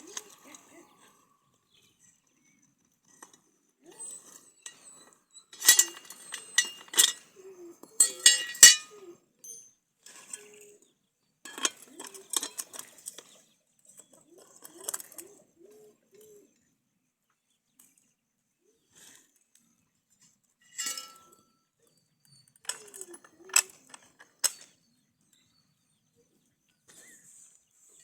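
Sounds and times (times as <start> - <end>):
metal clinking and rattling: 5.5 - 7.3, 8.0 - 9.0, 20.8 - 21.3.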